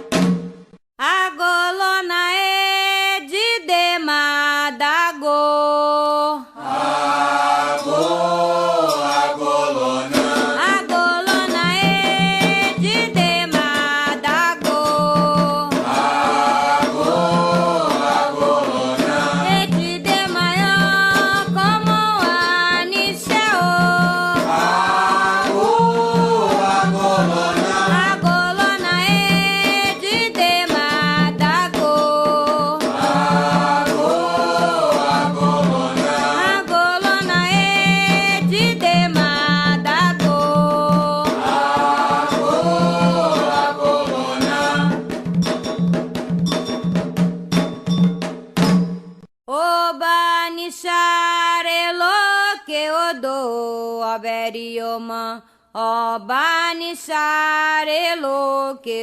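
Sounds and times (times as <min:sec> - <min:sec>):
group singing: 0:06.5 - 0:45.2
steady low drum beat: 0:11.4 - 0:13.6, 0:14.8 - 0:22.3, 0:23.2 - 0:30.0, 0:32.6 - 0:49.0.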